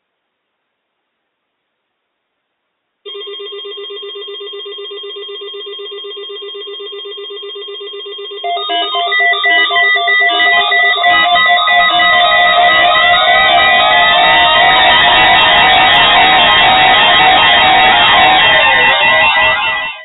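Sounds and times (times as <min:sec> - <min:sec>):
trilling electronic tone: 0:08.4 - 0:20.0.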